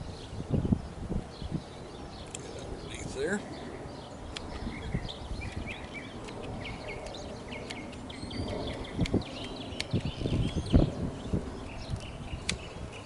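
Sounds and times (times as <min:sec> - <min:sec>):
small birds chirping: 0:00.0 - 0:13.0
wind buffeting microphone: 0:00.0 - 0:13.0
sharp click: 0:09.0 - 0:10.6, 0:12.0 - 0:12.7.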